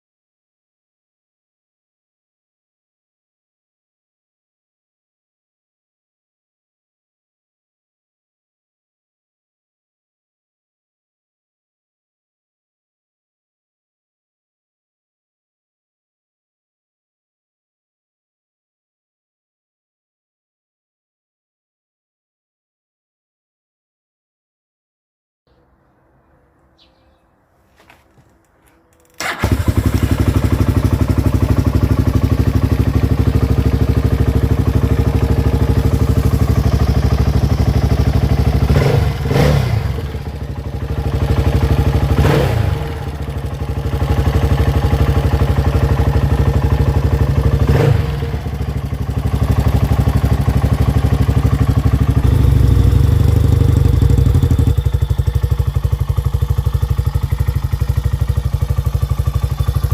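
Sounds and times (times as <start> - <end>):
atv engine running: 29.0 - 59.9.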